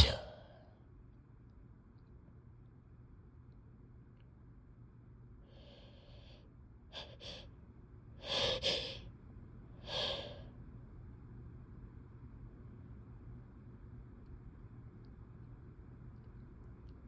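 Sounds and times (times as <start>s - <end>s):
sharp snorts: 0.0s - 0.4s
wet sneezes: 0.0s - 0.4s.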